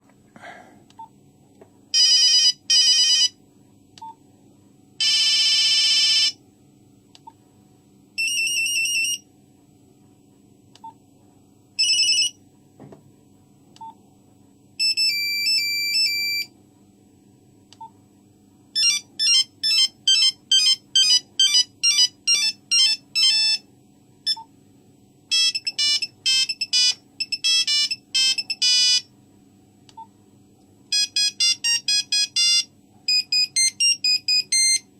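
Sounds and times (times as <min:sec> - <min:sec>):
faint steady hum: 0:00.0 - 0:34.9
mobile phone monophonic ringtones: 0:25.3 - 0:29.0, 0:30.9 - 0:34.8.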